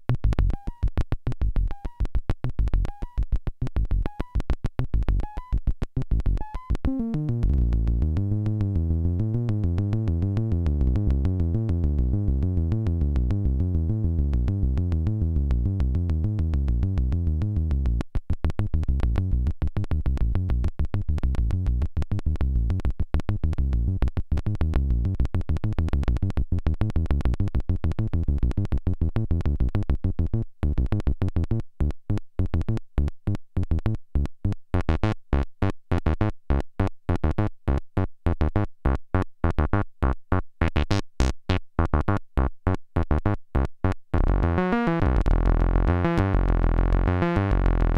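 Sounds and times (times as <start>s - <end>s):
synthesizer fast sequenced bass: 0.1s - 47.9s
sharp clicks on synth notes: 0.2s - 13.8s, 38.4s - 47.9s.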